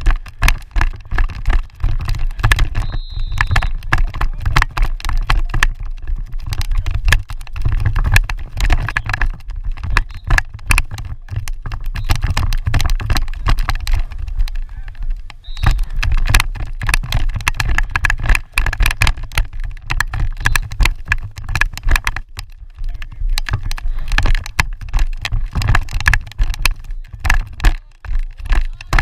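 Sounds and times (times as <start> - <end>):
wind buffeting microphone: 0.0 - 21.4.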